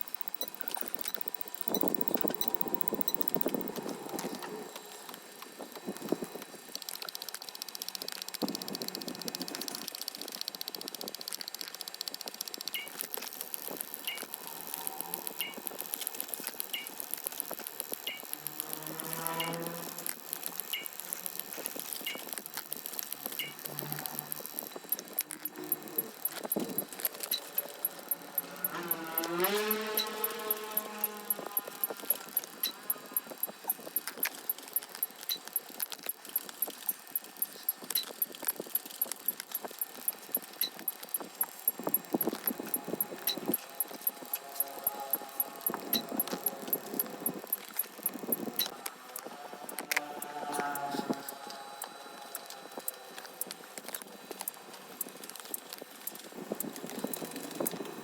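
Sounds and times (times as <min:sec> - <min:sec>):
very high steady tick: 0:00.0 - 0:04.2, 0:06.7 - 0:48.8, 0:49.7 - 0:57.8
dense crackling patter: 0:19.8 - 0:58.0.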